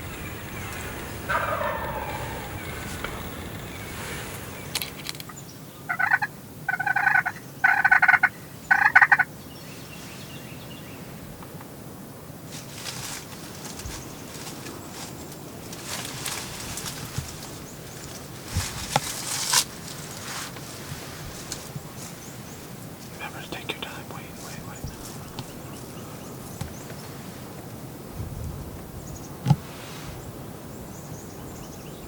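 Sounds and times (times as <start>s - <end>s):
turkey gobbling: 0.0s - 5.0s, 5.9s - 9.2s
wind-like background noise: 0.0s - 32.0s.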